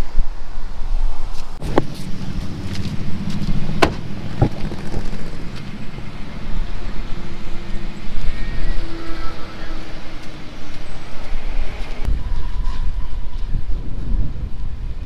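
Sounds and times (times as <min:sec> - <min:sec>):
vehicle engine running: 0:01.6 - 0:08.6.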